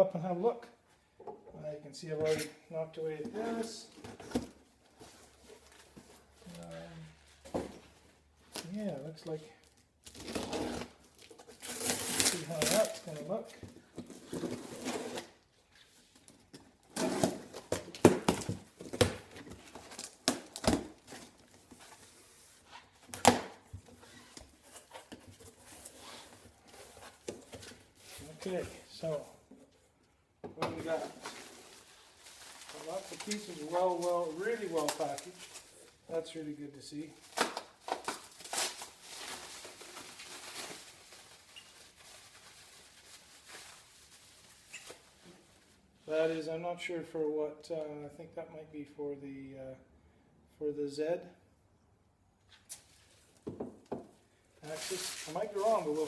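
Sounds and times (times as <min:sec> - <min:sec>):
cardboard packaging tearing and crinkling: 0:10.0 - 0:13.2, 0:14.0 - 0:15.4, 0:30.9 - 0:35.7, 0:37.2 - 0:44.7.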